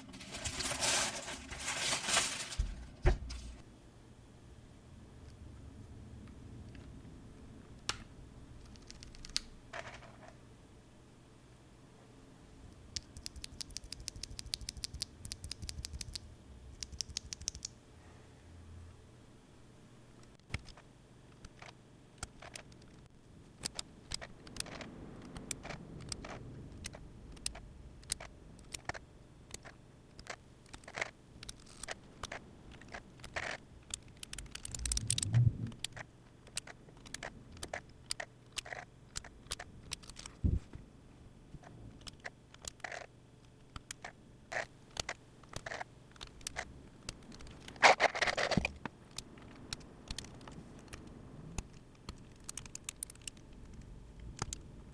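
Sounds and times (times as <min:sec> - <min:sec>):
scraping rustles: 0:00.0 - 0:03.6
mechanical keyboard clicks and taps: 0:12.9 - 0:16.2, 0:16.8 - 0:17.7.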